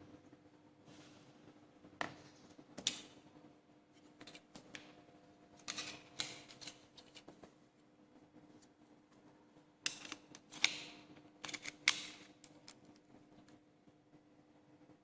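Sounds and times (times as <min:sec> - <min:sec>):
laptop parts clicking: 0:09.9 - 0:13.0.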